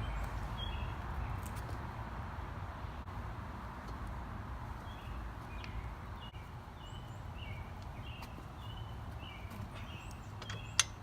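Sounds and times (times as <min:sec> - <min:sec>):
small birds chirping: 0:00.0 - 0:01.9, 0:04.7 - 0:11.0.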